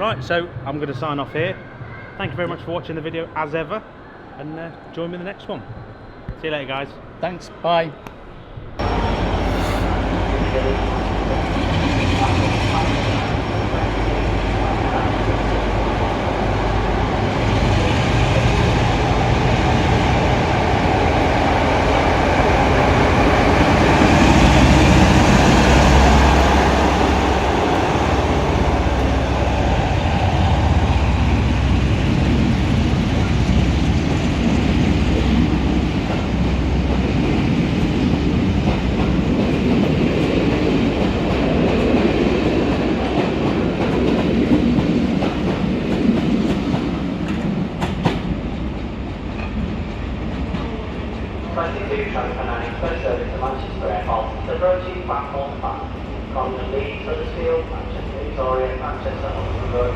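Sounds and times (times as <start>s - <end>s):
train rumble and wheel noise: 8.3s - 59.9s.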